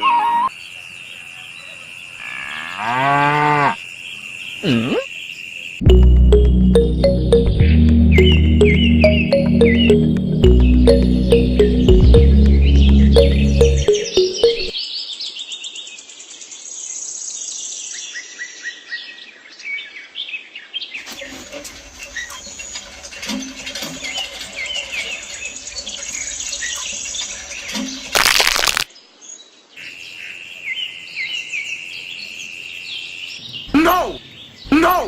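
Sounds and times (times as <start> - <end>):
songbirds chirping: 0.0 - 28.2, 28.9 - 35.0.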